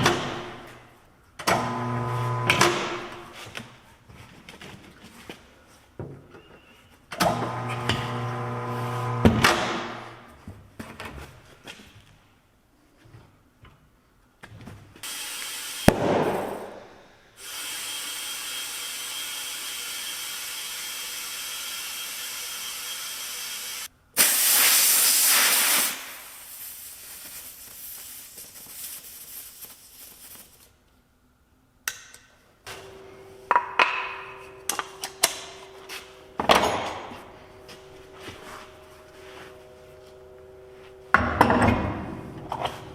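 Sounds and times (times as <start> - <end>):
power tool running: 1.5 - 3.0, 7.2 - 9.7, 15.0 - 16.8, 17.4 - 23.9.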